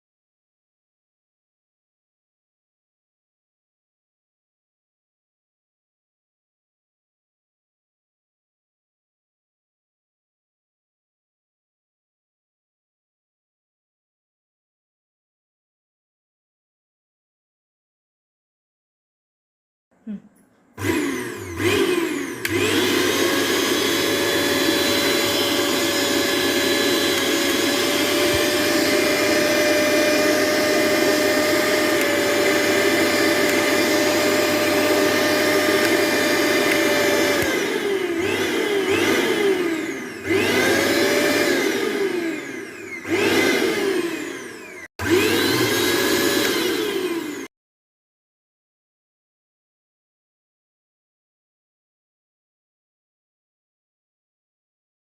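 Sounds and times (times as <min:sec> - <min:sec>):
mixer grinder motor whine: 0:20.8 - 0:47.5.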